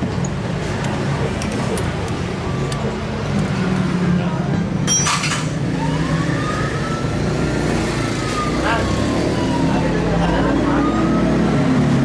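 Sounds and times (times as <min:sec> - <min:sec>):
ringing metal clink: 0:04.9 - 0:05.5.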